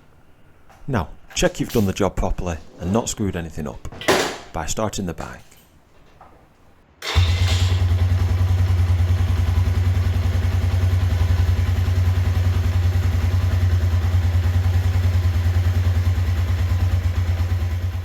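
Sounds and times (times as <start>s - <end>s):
motorcycle engine idling: 7.1s - 18.0s.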